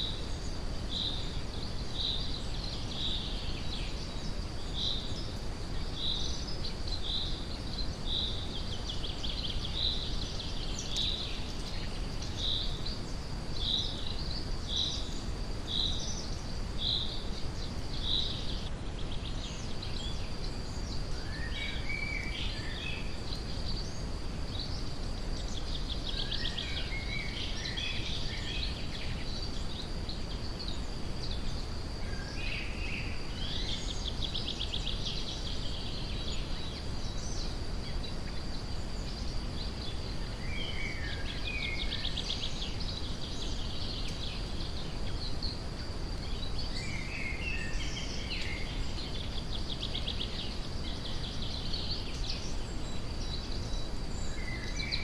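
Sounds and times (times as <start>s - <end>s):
songbirds singing: 0.0s - 55.0s.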